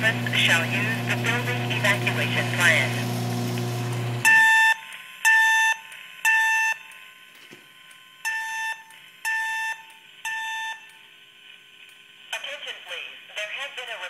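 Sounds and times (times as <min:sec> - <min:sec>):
evacuation alarm beeps: 0:04.2 - 0:11.1.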